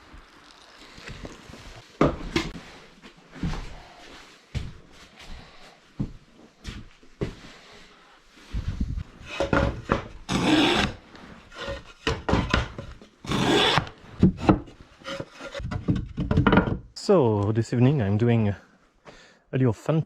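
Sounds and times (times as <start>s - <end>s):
scraping and rubbing wood: 9.1s - 16.8s.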